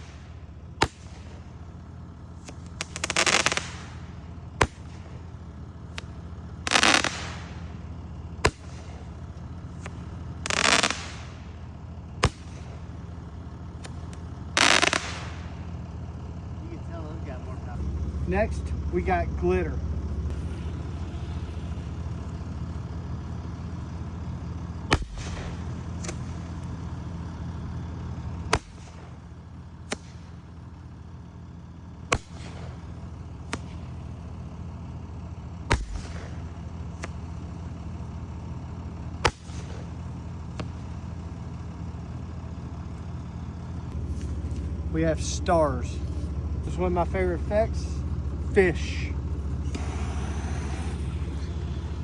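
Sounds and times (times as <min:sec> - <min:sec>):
steady low hum: 0:00.0 - 0:52.0
fireworks popping and banging: 0:02.4 - 0:05.2, 0:05.9 - 0:07.6, 0:09.7 - 0:11.4, 0:13.8 - 0:15.5, 0:24.2 - 0:26.8, 0:35.7 - 0:37.2.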